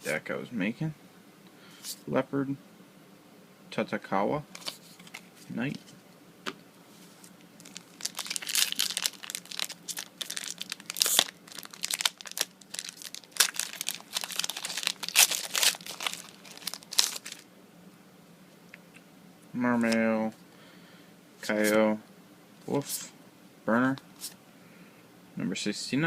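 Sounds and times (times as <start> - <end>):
wrapper crinkling and tearing: 7.6 - 17.4.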